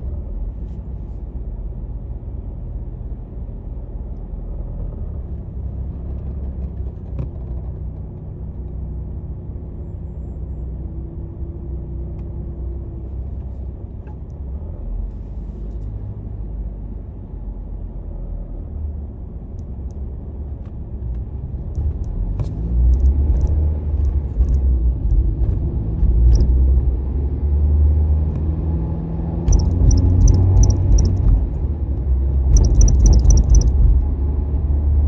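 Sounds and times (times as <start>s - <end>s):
steady low rumble: 19.0s - 27.4s, 28.2s - 34.8s
faint clicks: 29.5s - 31.7s, 32.5s - 33.8s.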